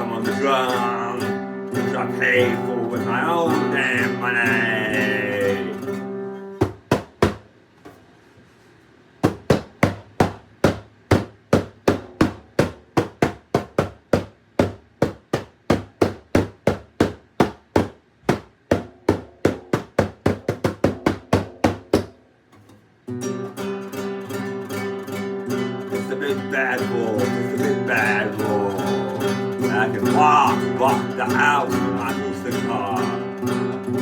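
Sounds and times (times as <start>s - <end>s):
drum beating: 6.6s - 7.4s, 9.2s - 22.1s.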